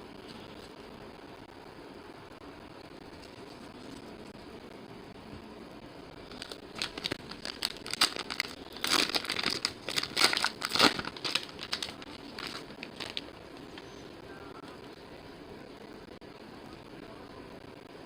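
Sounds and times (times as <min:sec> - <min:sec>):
foil wrapper crinkling: 0:06.3 - 0:13.9.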